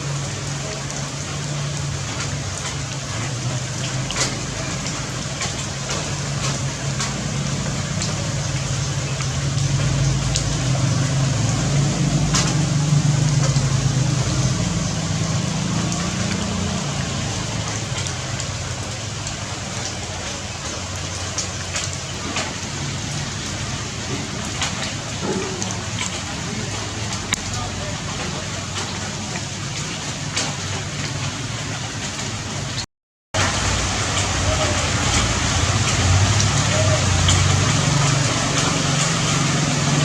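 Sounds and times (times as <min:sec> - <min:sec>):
rain falling: 0:00.0 - 0:40.0
sharp drip clicks: 0:00.1 - 0:31.4, 0:35.0 - 0:40.0.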